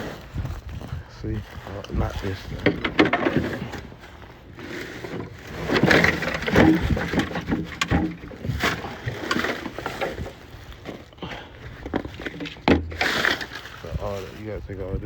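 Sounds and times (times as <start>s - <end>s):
metal parts knocking and scraping: 2.4s - 3.9s, 4.6s - 11.0s, 11.7s - 13.8s.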